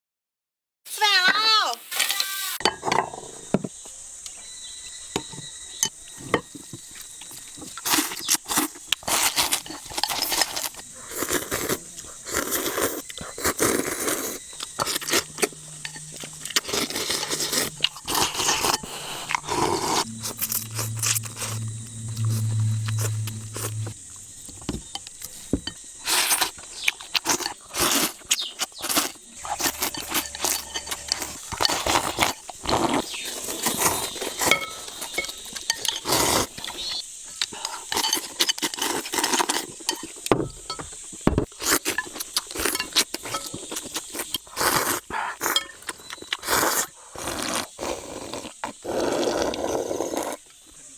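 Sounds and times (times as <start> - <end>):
scraping and crunching: 6.1 - 50.4
low steady hum: 14.4 - 25.8.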